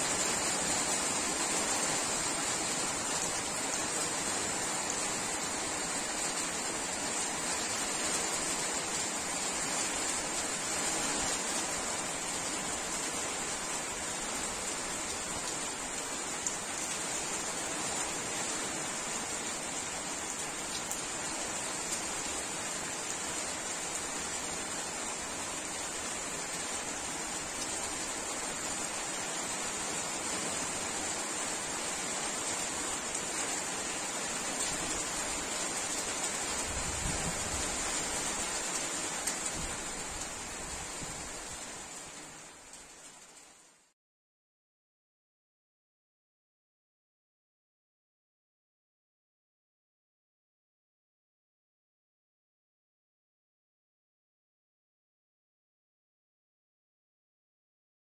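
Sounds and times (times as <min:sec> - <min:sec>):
steady rain: 0:00.0 - 0:44.0.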